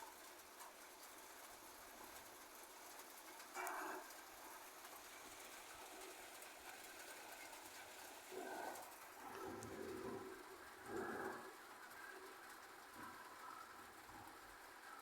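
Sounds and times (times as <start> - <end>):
faint steady hiss: 0.0 - 15.0
pigeon cooing: 3.6 - 4.2, 8.3 - 14.0.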